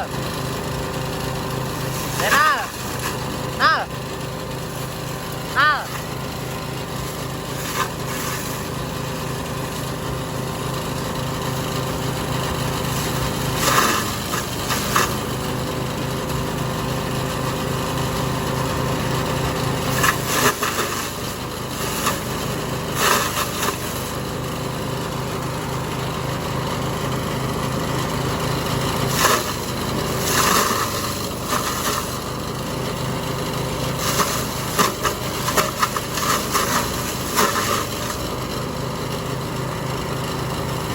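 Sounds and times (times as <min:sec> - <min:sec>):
forage chopper engine running: 0:00.0 - 0:40.9
bursts of chopping: 0:01.7 - 0:04.0, 0:04.6 - 0:09.1, 0:12.8 - 0:15.3, 0:19.9 - 0:24.0, 0:29.1 - 0:32.2, 0:34.0 - 0:38.3.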